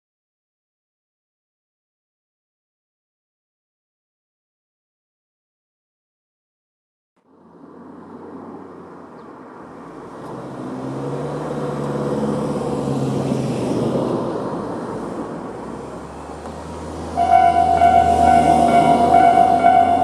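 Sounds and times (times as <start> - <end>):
vehicle engine and tyre noise: 7.2 - 20.0
crossing warning alarm: 17.2 - 20.0.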